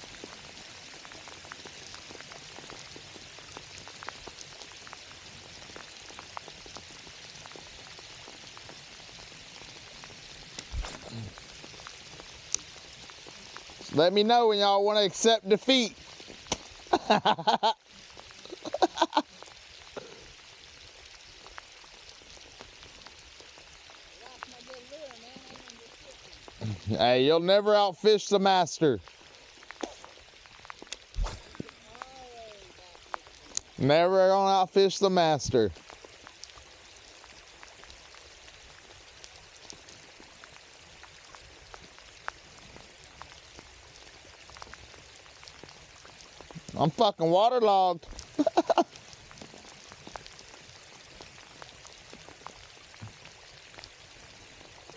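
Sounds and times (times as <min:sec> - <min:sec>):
raindrops ticking: 0:00.0 - 0:54.9
steady rain falling: 0:00.0 - 0:54.9
person speaking: 0:13.8 - 0:15.9, 0:26.6 - 0:29.0, 0:33.7 - 0:35.7, 0:46.8 - 0:48.8.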